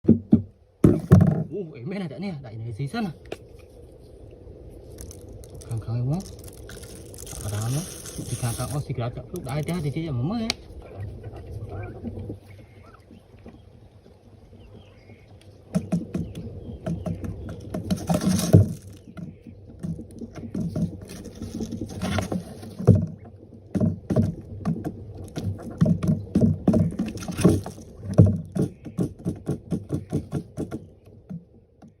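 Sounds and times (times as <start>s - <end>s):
knocks and taps: 0.0s - 1.4s, 15.7s - 21.0s, 22.8s - 32.0s
rustling and scraping: 3.0s - 10.1s, 15.1s - 31.0s.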